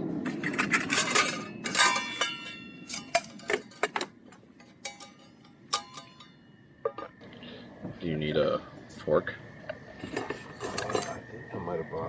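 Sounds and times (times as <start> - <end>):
metal cookware clinking: 0.2 - 7.2, 10.4 - 11.3.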